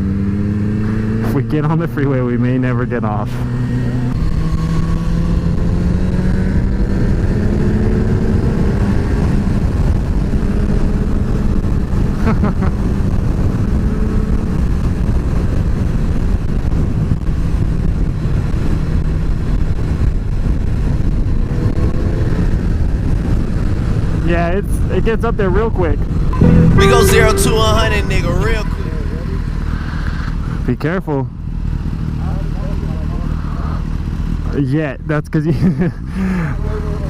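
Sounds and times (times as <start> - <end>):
wind rumble on microphone: 3.6 - 26.4.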